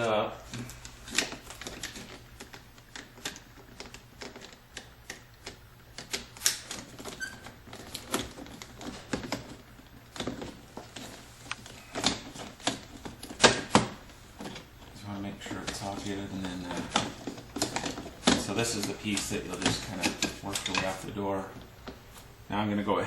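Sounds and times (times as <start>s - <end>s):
hard plastic clicks and knocks: 15.5s - 21.0s.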